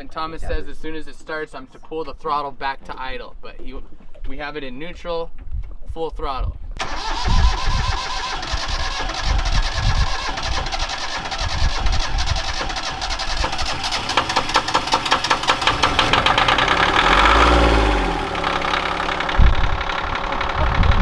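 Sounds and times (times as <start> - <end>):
diesel engine cranking and starting: 6.8 - 21.0
engine revving: 6.8 - 21.0.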